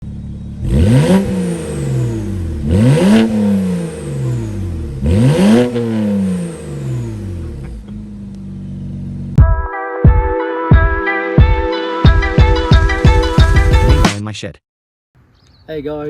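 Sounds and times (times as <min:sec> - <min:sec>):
car engine revving: 0:00.0 - 0:09.4.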